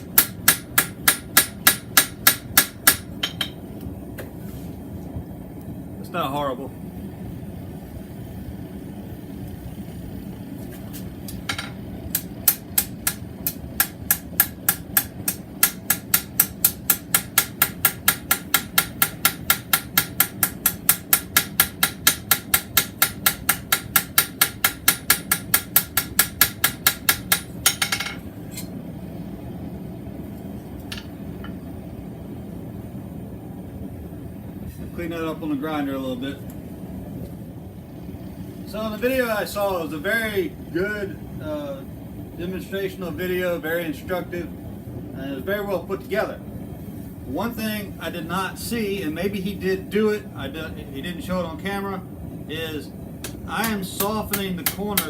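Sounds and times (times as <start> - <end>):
hammer striking steel on anvil: 0.0 - 3.6, 11.5 - 28.7, 53.2 - 55.0.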